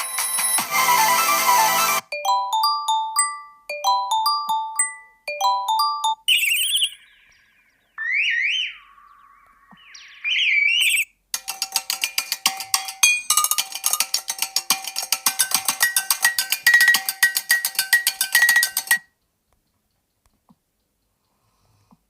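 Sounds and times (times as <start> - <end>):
warbling electronic ringtone: 0.3 - 7.2, 8.0 - 11.1
fast ticking rhythm with tones: 11.3 - 21.3.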